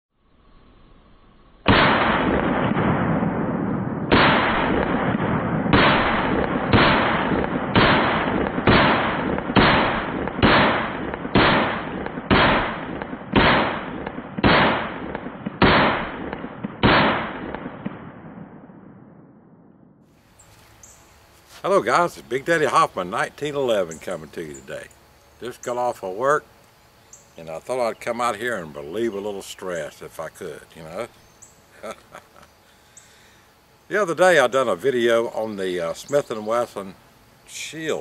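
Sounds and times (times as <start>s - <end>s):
loud gunshots: 1.7s - 18.6s.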